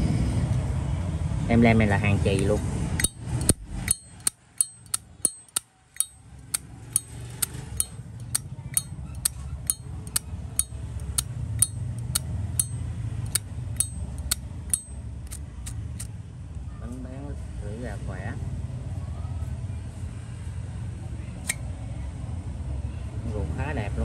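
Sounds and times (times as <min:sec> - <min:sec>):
low steady rumble: 0:00.0 - 0:24.0
lighter lid clicking open and shut: 0:03.0 - 0:06.1, 0:13.3 - 0:15.4.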